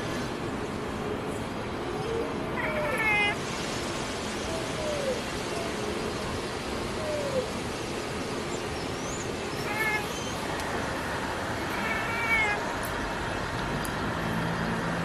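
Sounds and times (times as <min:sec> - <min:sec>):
steady background hiss: 0:00.0 - 0:15.0
cat chirping: 0:02.6 - 0:03.4, 0:09.5 - 0:10.4, 0:11.6 - 0:12.7
low engine hum: 0:09.5 - 0:15.0.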